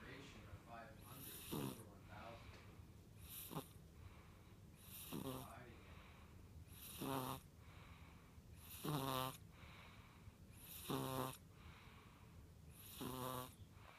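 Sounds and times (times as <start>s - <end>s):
baby snoring: 1.0s - 2.0s, 3.2s - 3.8s, 4.8s - 5.6s, 6.7s - 7.5s, 8.6s - 9.4s, 10.6s - 11.4s, 12.7s - 13.6s.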